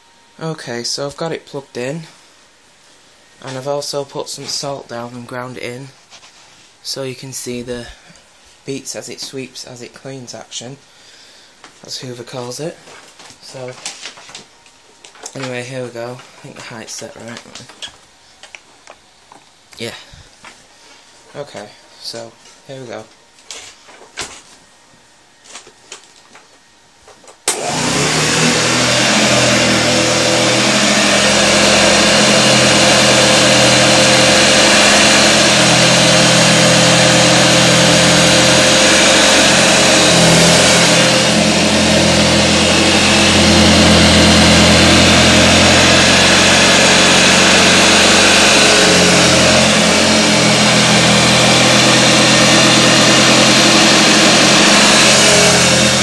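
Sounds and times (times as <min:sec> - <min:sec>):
upright vacuum cleaner running: 0:27.5 - 0:56.0.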